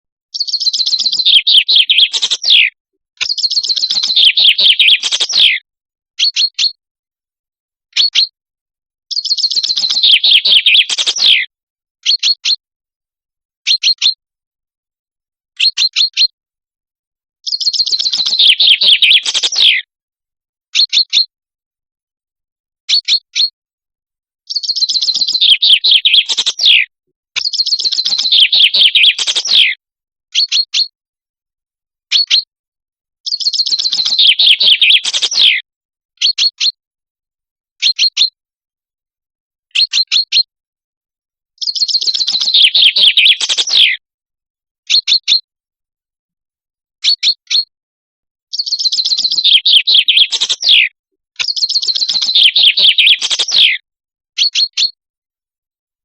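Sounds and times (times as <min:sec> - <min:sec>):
chaffinch song: 0:00.3 - 0:06.8, 0:07.9 - 0:08.4, 0:09.1 - 0:12.6, 0:13.6 - 0:14.2, 0:15.6 - 0:16.4, 0:17.4 - 0:19.9, 0:20.7 - 0:21.3, 0:22.9 - 0:23.6, 0:24.5 - 0:31.0, 0:33.2 - 0:35.6, 0:36.2 - 0:36.8, 0:37.8 - 0:38.4, 0:39.7 - 0:40.5, 0:41.6 - 0:44.0, 0:44.8 - 0:45.5, 0:47.0 - 0:47.7, 0:48.5 - 0:53.8, 0:54.4 - 0:55.0
sharp bird call notes: 0:00.4 - 0:05.6, 0:24.6 - 0:29.7, 0:48.8 - 0:53.7.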